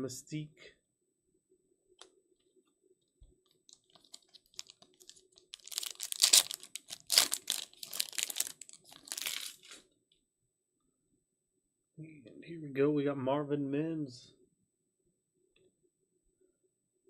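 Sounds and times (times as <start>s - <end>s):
wrapper tearing and crinkling: 3.7s - 9.8s.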